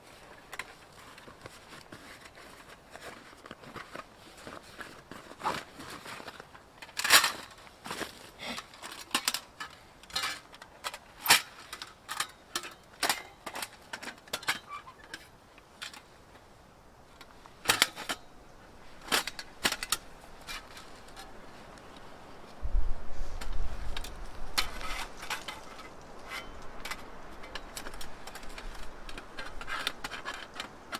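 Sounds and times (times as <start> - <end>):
metal parts clicking and clinking: 8.4 - 16.1, 23.9 - 30.9.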